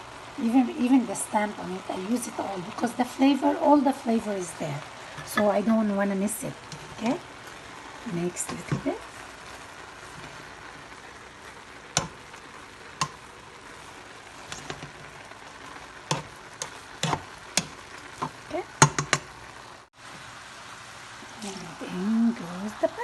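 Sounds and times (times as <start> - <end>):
food sizzling in a pan: 0.0 - 23.0
spoon knocking against pan: 17.0 - 19.3.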